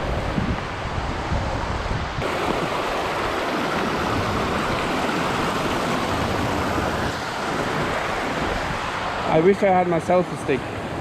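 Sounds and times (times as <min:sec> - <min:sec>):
river water rushing over rocks: 0:02.2 - 0:11.0.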